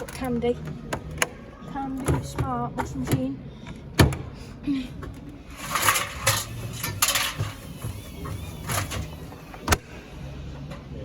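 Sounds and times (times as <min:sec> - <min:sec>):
clattering: 0:05.6 - 0:08.0.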